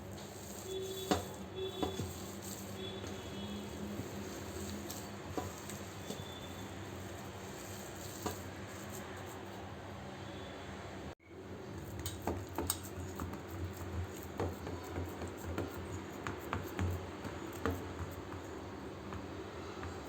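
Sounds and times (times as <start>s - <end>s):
kitchen clicks and taps: 1.0s - 3.2s, 3.8s - 8.9s, 11.8s - 18.5s.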